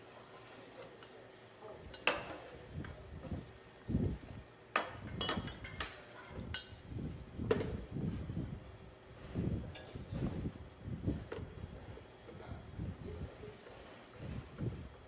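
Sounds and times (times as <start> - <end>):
dishes clinking: 1.8 - 2.6, 4.7 - 6.8.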